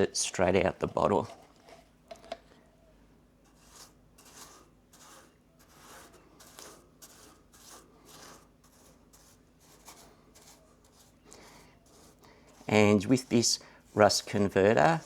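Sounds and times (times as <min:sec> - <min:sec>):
brush swishing on steel panel: 0:03.4 - 0:15.0.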